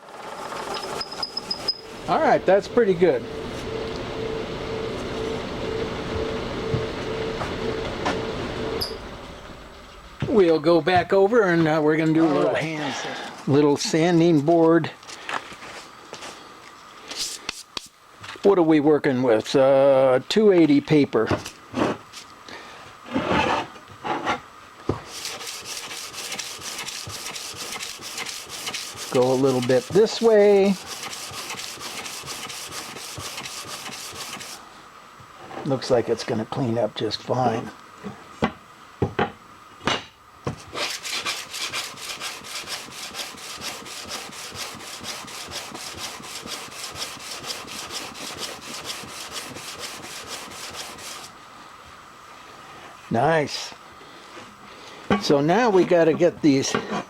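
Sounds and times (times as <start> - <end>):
sandpaper rubbing back and forth: 0.2 - 2.4, 17.2 - 17.9, 25.0 - 34.6, 40.7 - 51.3.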